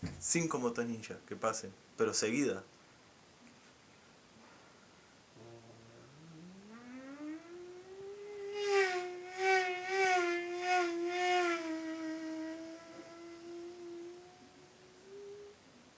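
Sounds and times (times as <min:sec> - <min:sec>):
person imitating motorcycle engines: 0:05.4 - 0:15.6.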